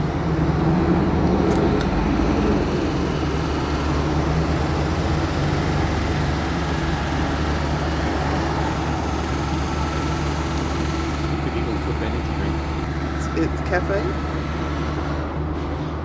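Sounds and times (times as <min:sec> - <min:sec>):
vehicle engine idling: 0:00.0 - 0:16.0.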